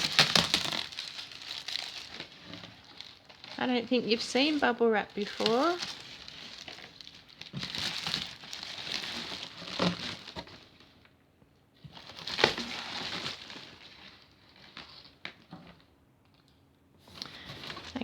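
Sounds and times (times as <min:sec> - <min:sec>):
sharp crackle: 0:00.0 - 0:10.6
bubble wrap crinkling: 0:00.0 - 0:11.1, 0:11.8 - 0:15.9.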